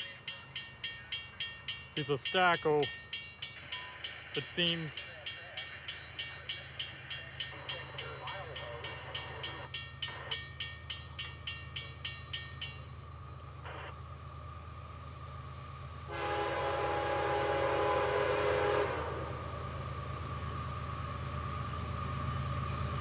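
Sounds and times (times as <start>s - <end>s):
bell ringing: 0.0s - 13.0s
locomotive horn: 16.1s - 19.5s.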